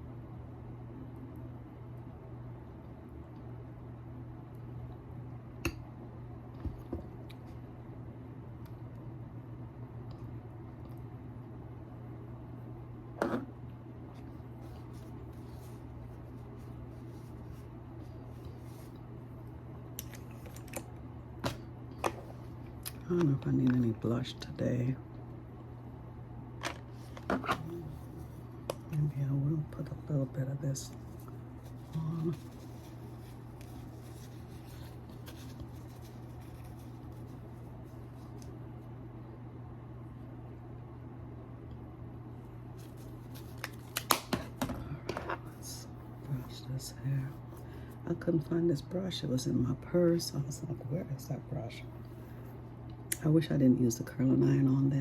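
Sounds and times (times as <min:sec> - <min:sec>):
steady low hum: 0:00.0 - 0:55.0
makeup brush strokes: 0:14.2 - 0:19.1, 0:30.6 - 0:38.4.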